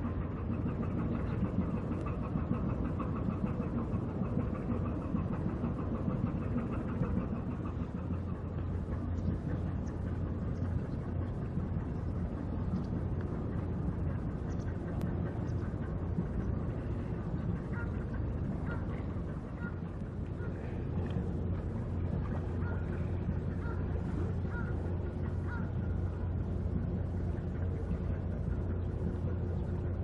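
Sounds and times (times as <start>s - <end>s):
ship diesel engine droning: 0.0s - 30.0s.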